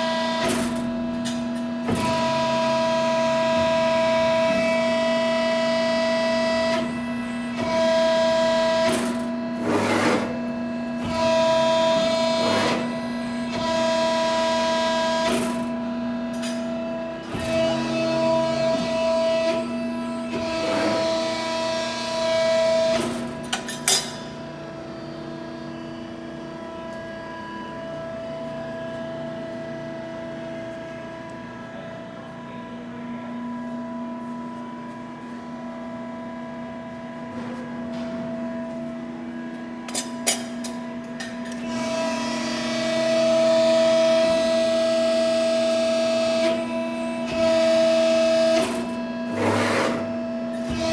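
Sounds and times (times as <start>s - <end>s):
hydraulic pump whining: 41.5s - 50.9s.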